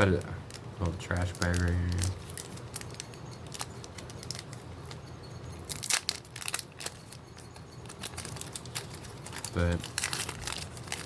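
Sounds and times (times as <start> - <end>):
plastic wrappers rustling: 0.0 - 11.0.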